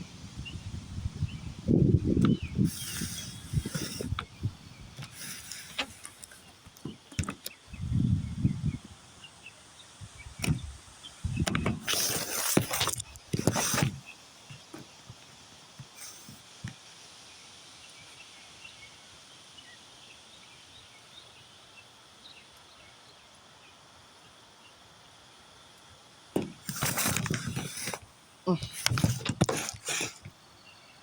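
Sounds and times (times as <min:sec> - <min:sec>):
gusty wind buffeting microphone: 0:00.0 - 0:06.0, 0:07.7 - 0:09.2, 0:10.0 - 0:12.3.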